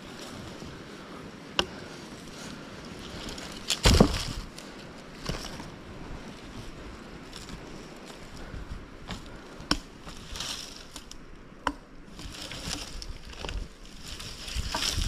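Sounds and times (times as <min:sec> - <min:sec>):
wood knocks and thuds: 0:03.7 - 0:04.5.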